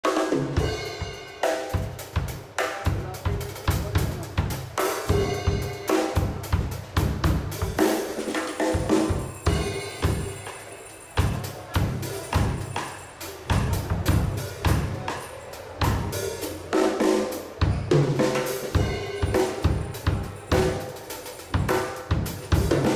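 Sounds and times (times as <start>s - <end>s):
drum kit beat: 0.0s - 22.9s.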